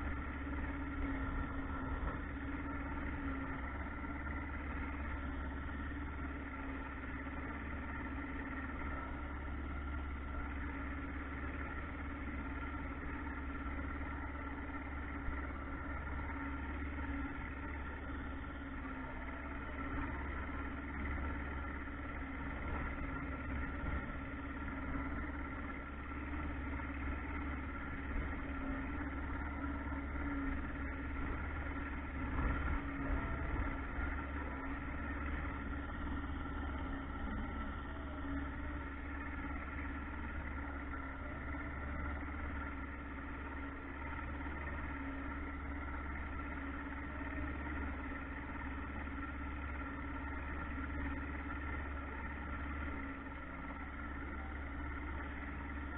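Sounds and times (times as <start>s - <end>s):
boat motor running: 0.0s - 55.9s.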